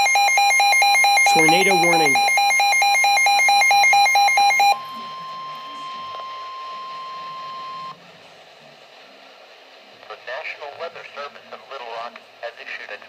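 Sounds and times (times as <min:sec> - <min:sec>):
steady warning alarm tone: 0:00.0 - 0:08.0
rapidly pulsing alert beep: 0:00.2 - 0:04.8
faint radio hiss: 0:01.4 - 0:02.2, 0:04.9 - 0:13.0.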